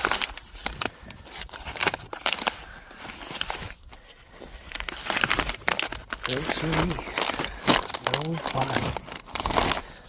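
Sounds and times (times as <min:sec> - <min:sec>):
tools rummaged in bag: 0:04.6 - 0:10.0.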